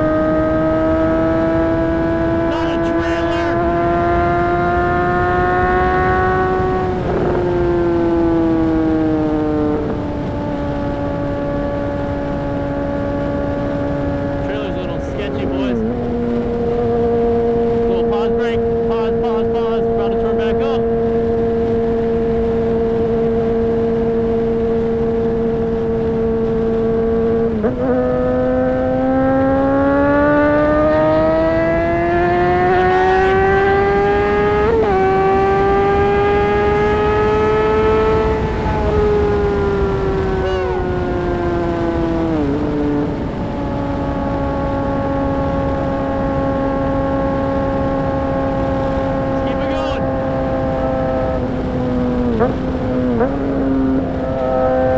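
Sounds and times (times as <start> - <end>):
motorcycle engine accelerating: 0.0 - 54.9
steady rush of noise: 47.6 - 53.2.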